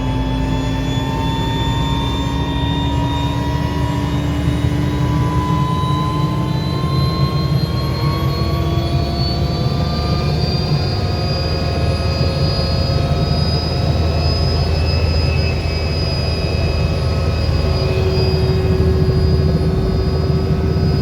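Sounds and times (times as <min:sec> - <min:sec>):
helicopter rotor and engine drone: 0:00.0 - 0:21.0
turbine whine: 0:00.0 - 0:21.0.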